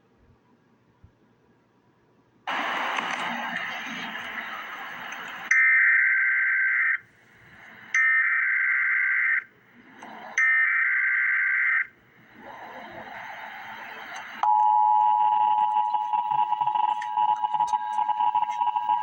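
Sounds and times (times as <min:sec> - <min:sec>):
steady hiss: 0:02.5 - 0:05.5
digital data tone bursts: 0:10.3 - 0:19.0.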